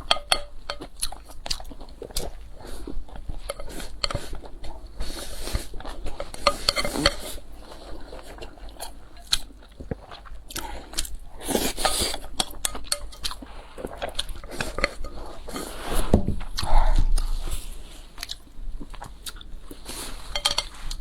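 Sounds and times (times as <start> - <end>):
chewing and biting food: 0.0 - 21.0
utensils clicking against dish: 20.3 - 20.8.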